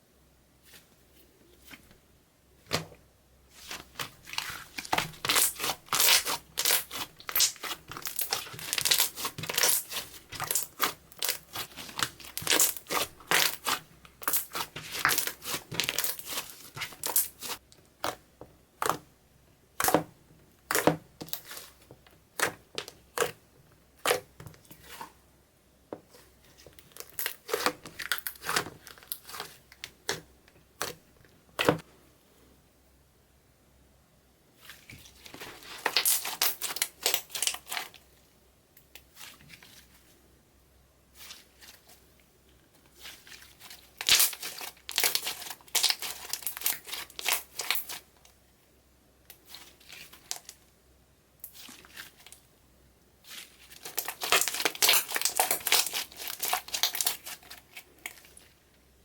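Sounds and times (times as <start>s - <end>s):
slime crackling and squishing: 3.5s - 18.2s, 19.8s - 23.4s, 26.1s - 31.8s, 34.7s - 38.1s, 42.9s - 48.2s, 49.4s - 50.6s, 53.2s - 58.6s.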